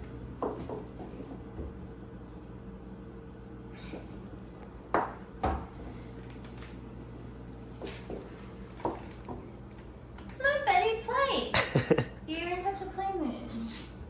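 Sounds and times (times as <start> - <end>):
small bells clinking: 0.4 - 1.8, 3.8 - 9.6.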